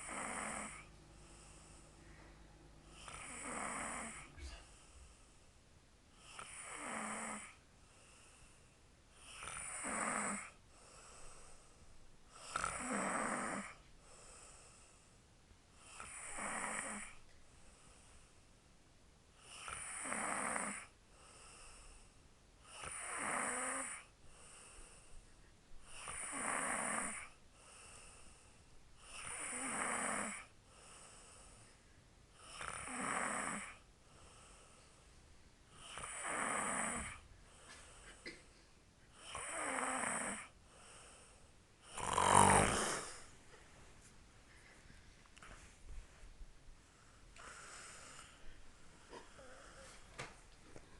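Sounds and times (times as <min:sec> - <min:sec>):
woman snoring loudly: 0:00.0 - 0:00.9, 0:02.9 - 0:04.3, 0:06.3 - 0:07.6, 0:09.3 - 0:10.6, 0:12.4 - 0:13.8, 0:15.9 - 0:17.2, 0:19.6 - 0:20.9, 0:22.7 - 0:24.1, 0:26.0 - 0:27.3, 0:29.1 - 0:30.5, 0:32.5 - 0:33.8, 0:35.8 - 0:37.2, 0:39.2 - 0:40.5, 0:41.8 - 0:43.2
quiet breathing: 0:00.0 - 0:18.7, 0:20.8 - 0:50.9.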